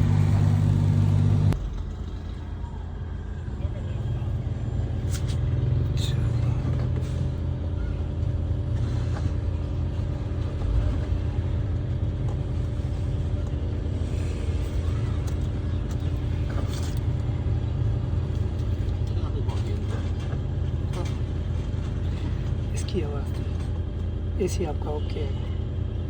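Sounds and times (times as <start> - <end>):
car air blower hum: 0.0 - 3.2.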